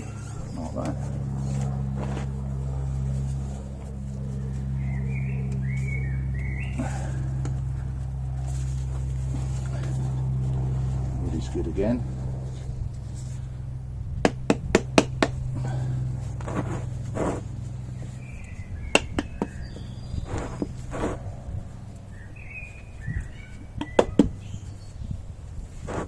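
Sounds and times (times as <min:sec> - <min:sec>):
steady low hum: 0:00.0 - 0:26.0
wood tapping on metal part: 0:14.2 - 0:15.4, 0:19.0 - 0:19.6.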